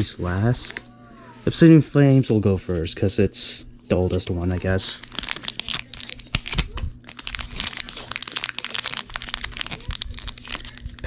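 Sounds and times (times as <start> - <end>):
foil wrapper crinkling and tearing: 4.0 - 11.0.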